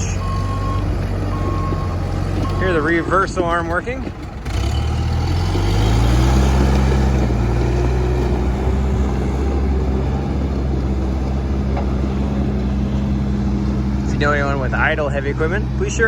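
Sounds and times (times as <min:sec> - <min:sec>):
diesel engine revving: 0:00.0 - 0:16.0.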